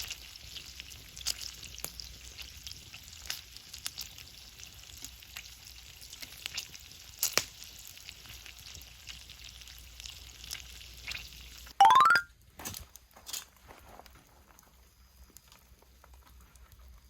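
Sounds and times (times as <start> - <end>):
fire pops and crackles: 0.0 - 8.8
paella sizzling in a pan: 0.0 - 11.8, 12.9 - 17.0.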